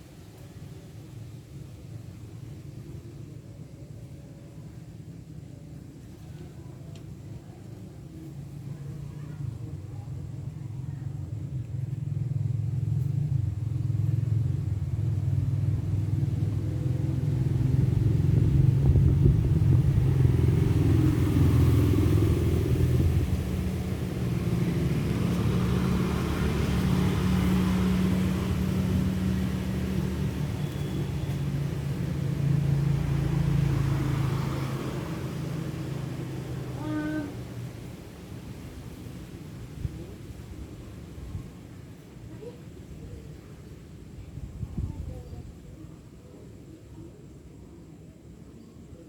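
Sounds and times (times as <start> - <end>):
vehicle engine humming: 12.0 - 39.0.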